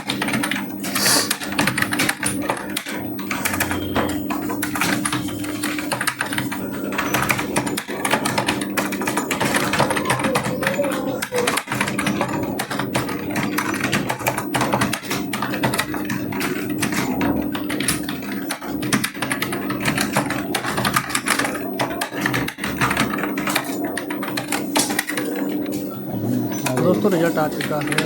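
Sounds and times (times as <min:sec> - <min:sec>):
people typing on keyboards: 0:00.0 - 0:28.0.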